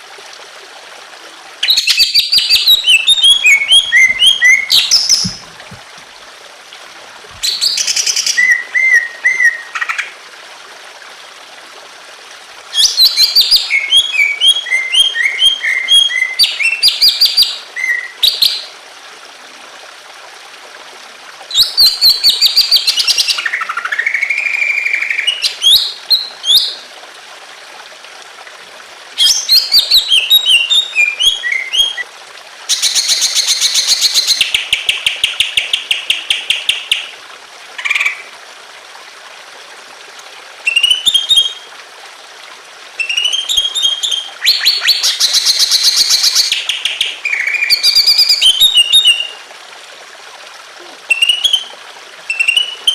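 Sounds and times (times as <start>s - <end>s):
trickling water: 0.0s - 52.9s
bird singing whistles and trills: 1.6s - 5.5s, 7.4s - 9.7s, 12.8s - 18.6s, 21.5s - 23.4s, 29.2s - 32.0s, 40.7s - 41.6s, 43.0s - 49.3s, 51.1s - 51.7s, 52.3s - 52.9s.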